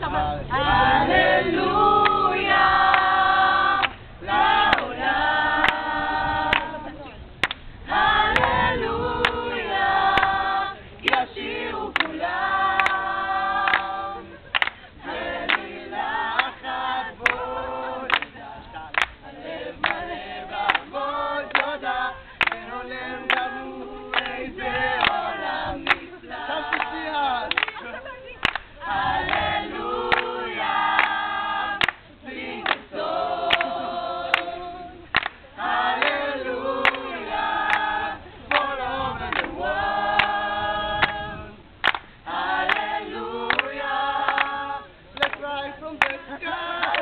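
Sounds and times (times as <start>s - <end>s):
choir singing a cappella: 0.0s - 7.2s, 7.8s - 27.7s, 28.8s - 47.0s
short sharp clicks or claps: 41.8s - 42.1s.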